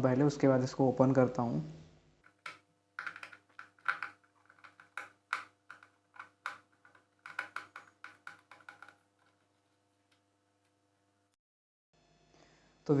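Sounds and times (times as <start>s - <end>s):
screwdriver clicks and taps: 2.2s - 9.4s.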